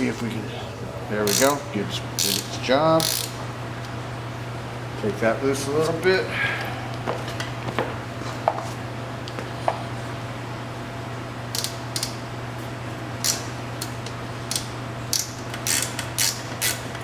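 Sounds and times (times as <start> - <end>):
steady low hum: 0.0 - 17.0
ratchet wrench clicking: 1.3 - 1.6, 2.2 - 3.4, 11.5 - 12.2, 13.2 - 16.9.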